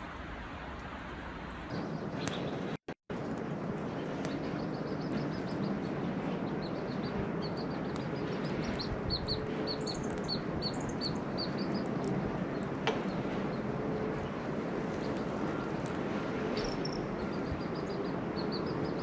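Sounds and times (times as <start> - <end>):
steady background noise: 0.0 - 19.0
small bird chirping: 4.2 - 13.6.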